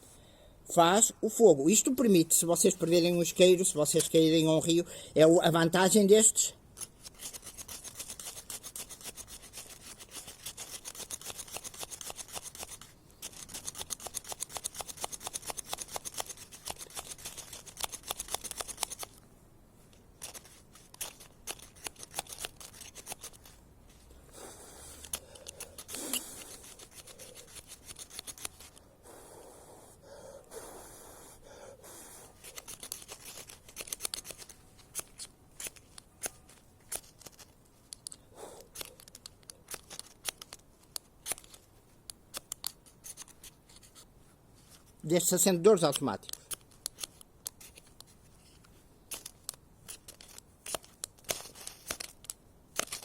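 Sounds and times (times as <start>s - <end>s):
knife scraping fire-starter rod: 6.8s - 19.0s, 24.8s - 28.8s.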